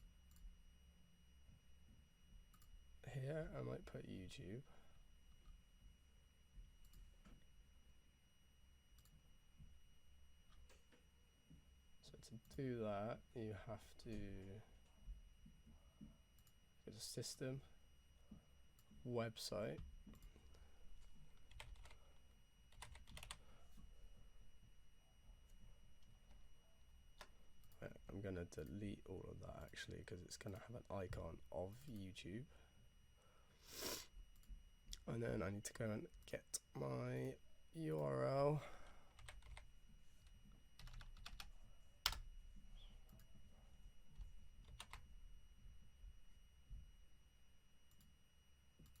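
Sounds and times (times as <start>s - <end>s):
keyboard keys clicking: 21.5s - 22.0s, 22.7s - 23.4s, 39.2s - 39.7s, 40.8s - 42.2s, 44.6s - 45.0s.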